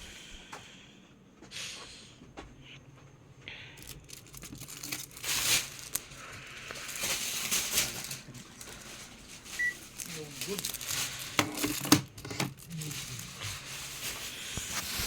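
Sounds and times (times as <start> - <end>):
rustling and crinkling handling: 2.9 - 15.0.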